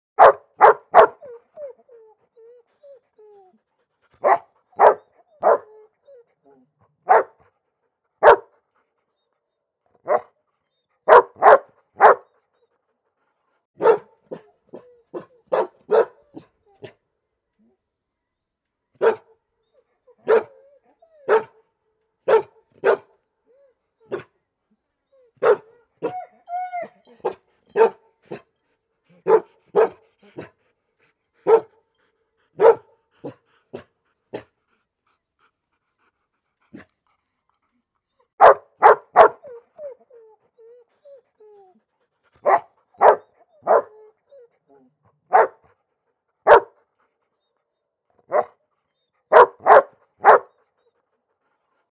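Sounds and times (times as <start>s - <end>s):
dog barking: 0.2s - 1.3s, 4.2s - 5.7s, 7.0s - 7.4s, 8.2s - 8.5s, 10.0s - 10.3s, 11.1s - 12.3s, 13.8s - 14.4s, 15.2s - 16.2s, 19.0s - 19.3s, 20.2s - 20.5s, 21.3s - 21.5s, 22.3s - 23.1s, 25.4s - 25.7s, 27.2s - 28.0s, 29.2s - 30.0s, 31.4s - 31.7s, 32.6s - 33.4s, 38.4s - 39.5s, 42.4s - 43.9s, 45.3s - 45.6s, 46.4s - 46.8s, 48.3s - 48.6s, 49.3s - 50.5s
dog whining: 25.1s - 27.9s, 39.3s - 41.9s.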